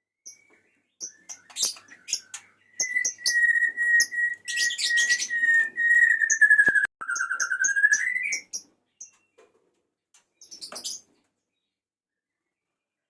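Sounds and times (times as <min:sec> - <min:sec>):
bird chirping and whistling: 0:01.0 - 0:09.2
long falling bird whistle: 0:02.7 - 0:08.5.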